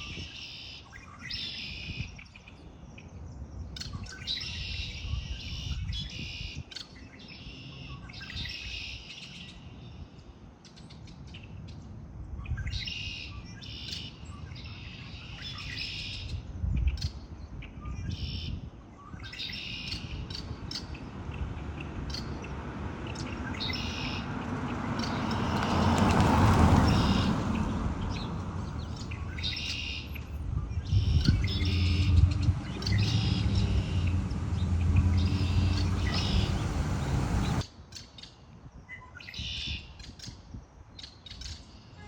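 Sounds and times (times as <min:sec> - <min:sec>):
bird singing trilled phrases: 0:00.0 - 0:11.8, 0:12.4 - 0:25.7, 0:26.8 - 0:40.4
low steady rumble: 0:27.5 - 0:37.6.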